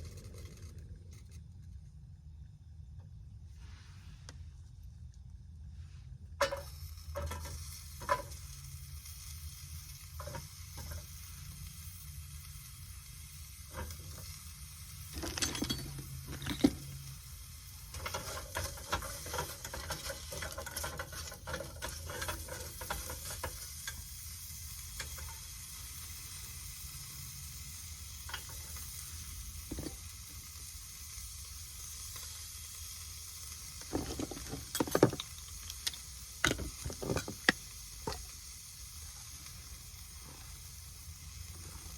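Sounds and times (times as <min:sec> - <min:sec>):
food sizzling in a pan: 0:05.8 - 0:41.9
utensils clicking and knocking: 0:33.8 - 0:38.2.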